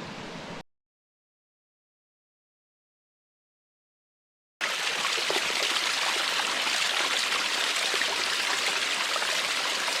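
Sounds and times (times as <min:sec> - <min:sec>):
creek water rushing: 0:04.6 - 0:10.0.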